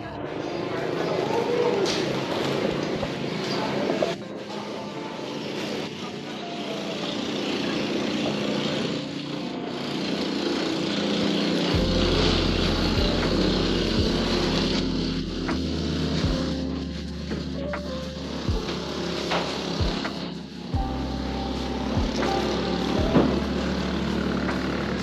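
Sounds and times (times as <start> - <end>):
small engine running: 7.0 - 15.1
deep low rumble: 11.7 - 25.0.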